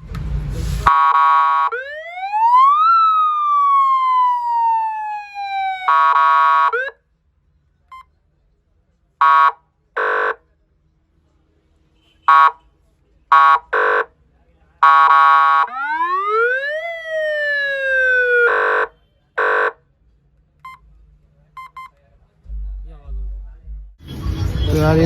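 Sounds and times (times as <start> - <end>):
siren horn blasts: 0.9 - 6.9, 12.3 - 12.6, 14.8 - 19.8
siren wail: 0.9 - 6.9, 15.0 - 19.6.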